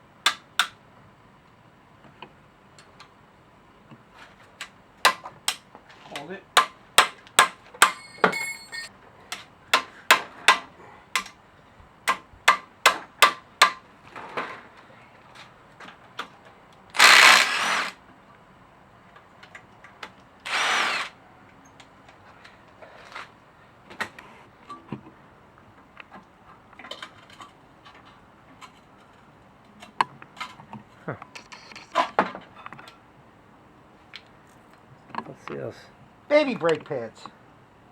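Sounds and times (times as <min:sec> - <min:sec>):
hammer striking metal: 0:07.0 - 0:08.9
power tool bursts: 0:17.0 - 0:18.0, 0:20.5 - 0:21.2.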